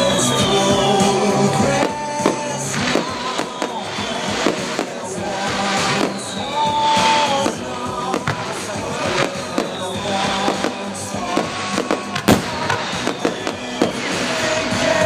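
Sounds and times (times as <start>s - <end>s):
fireworks popping and crackling: 0.0s - 15.0s
music: 0.0s - 15.0s
sharp loud firework bang: 10.4s - 14.2s.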